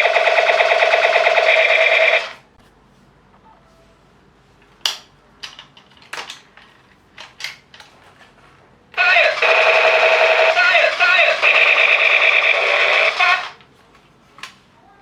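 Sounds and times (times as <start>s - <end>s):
toy gun electronic firing sound: 0.0s - 2.4s, 9.0s - 13.6s
plastic clicks of toy gun handling: 4.8s - 8.0s.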